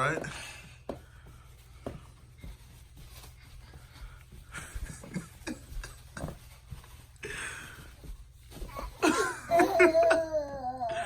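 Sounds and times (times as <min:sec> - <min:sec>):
child making breathy vocal noises: 0:09.5 - 0:11.0.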